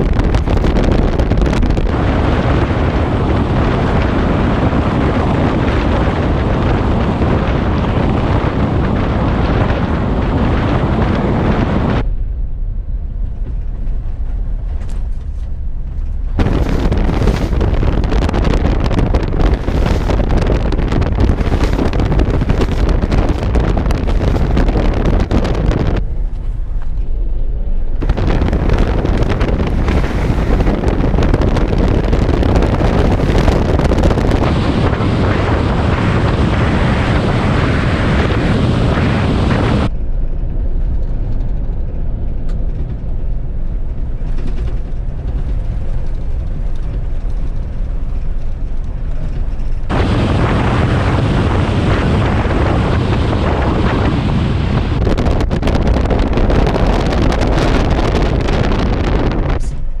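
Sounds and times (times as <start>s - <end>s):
engine and tyre rumble: 0.0s - 60.0s
wind rushing on microphone: 0.0s - 60.0s.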